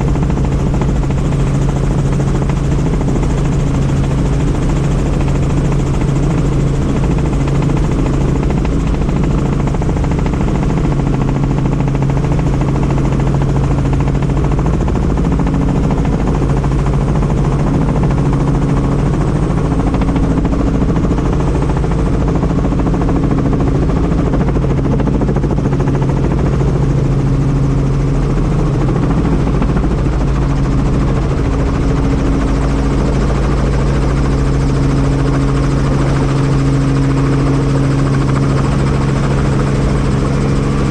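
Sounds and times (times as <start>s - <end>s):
helicopter rotor and engine drone: 0.0s - 40.9s.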